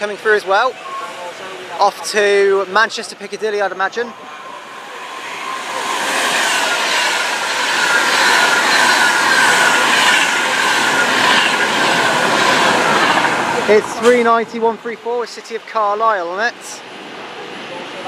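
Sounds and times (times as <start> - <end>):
train wheels rushing on rail: 0.0 - 18.0
faint falling whine: 0.2 - 12.2.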